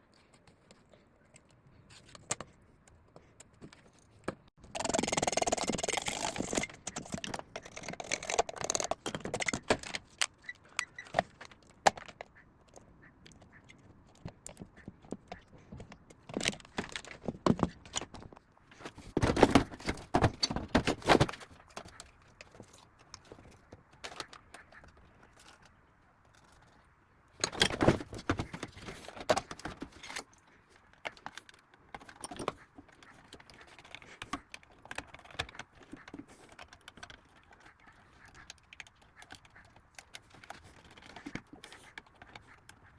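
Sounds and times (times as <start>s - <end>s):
metal parts and tools clinking: 0.1s - 26.8s, 27.4s - 42.5s.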